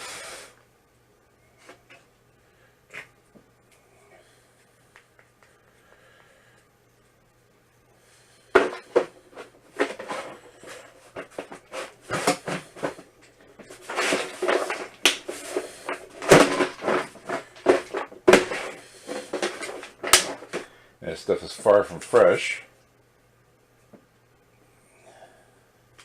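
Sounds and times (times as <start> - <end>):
paper rustling: 13.6 - 20.7.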